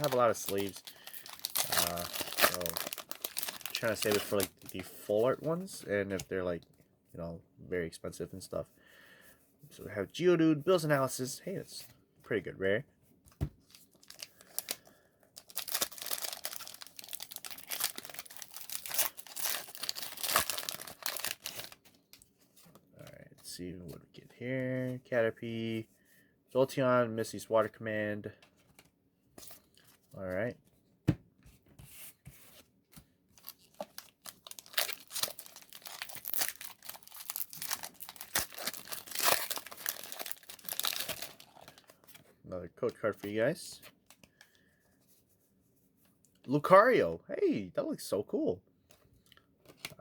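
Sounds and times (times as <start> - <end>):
foil wrapper tearing: 0.0 - 4.8, 15.4 - 21.8, 33.6 - 41.9
foil wrapper crinkling: 0.0 - 5.1, 13.9 - 21.9, 33.4 - 42.2.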